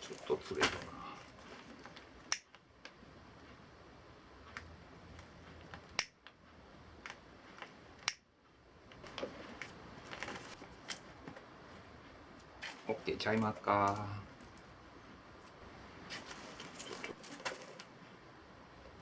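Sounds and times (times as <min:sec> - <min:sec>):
tools clicking and tapping: 0:07.0 - 0:08.3.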